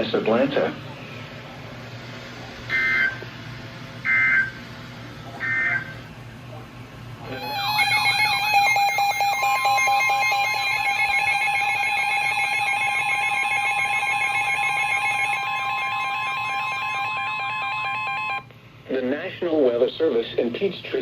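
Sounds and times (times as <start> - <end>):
two-tone alarm: 2.7 - 3.2, 4.0 - 4.6, 5.4 - 6.0, 7.2 - 18.5
warbling tone: 7.2 - 18.4.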